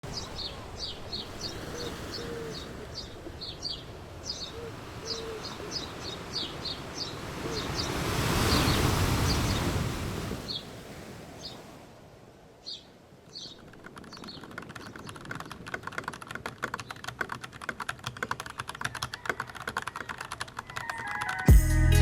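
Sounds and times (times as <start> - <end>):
small birds chirping: 0.1 - 9.8, 12.6 - 21.5.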